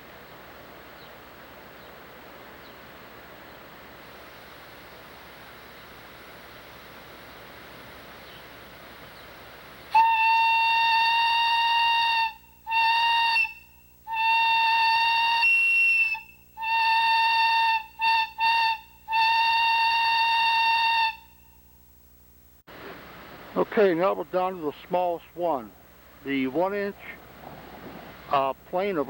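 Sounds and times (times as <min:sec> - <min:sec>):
steady hiss: 0:00.0 - 0:29.0
steam whistle blasts: 0:09.9 - 0:21.6.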